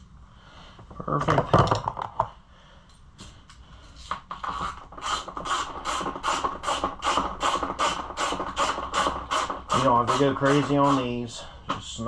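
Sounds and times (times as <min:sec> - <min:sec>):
hand ratchet clicking: 0:05.0 - 0:11.2.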